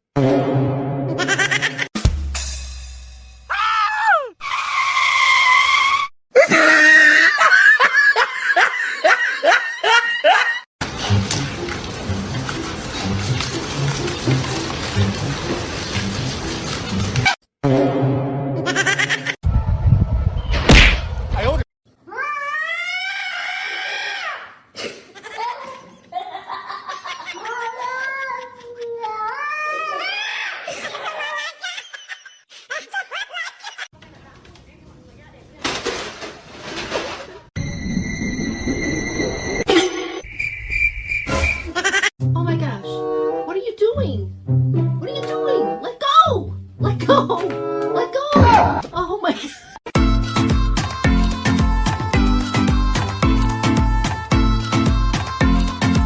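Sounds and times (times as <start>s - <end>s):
low boom: 19.4s - 21.6s.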